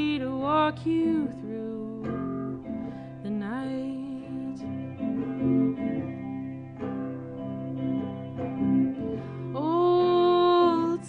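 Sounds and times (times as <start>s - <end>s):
woman singing: 0.0s - 5.2s, 9.3s - 11.0s
guitar strumming chords: 0.0s - 11.0s.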